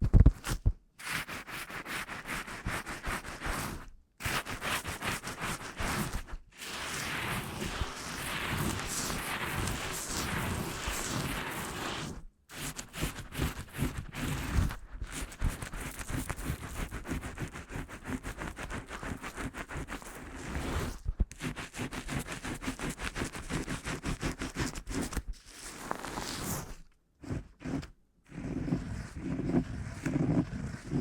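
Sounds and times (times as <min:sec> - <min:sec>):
fast scraping strokes: 0:01.1 - 0:25.2.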